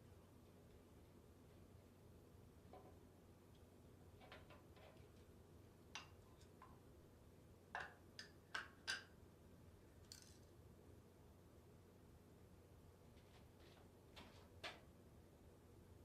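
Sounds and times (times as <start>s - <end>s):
light clicks of metal parts handled: 10.0s - 10.5s.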